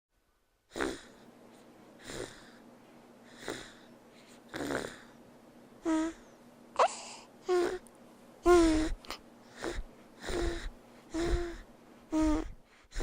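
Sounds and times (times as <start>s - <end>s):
doll breathy snores: 0.7s - 1.2s, 2.0s - 2.6s, 3.3s - 3.9s, 4.5s - 5.2s, 7.4s - 7.8s, 8.5s - 13.0s.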